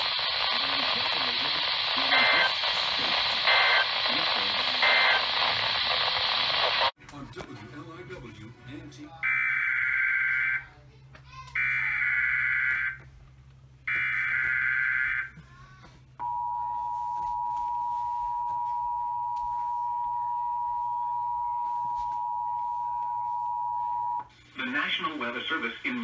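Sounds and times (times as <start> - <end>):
screeching data bursts: 0.0 - 6.9.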